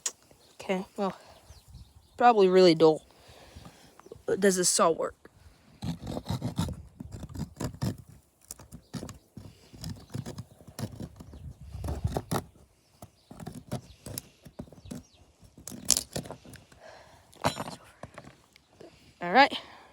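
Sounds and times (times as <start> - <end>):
small saw scraping: 5.6 - 16.8.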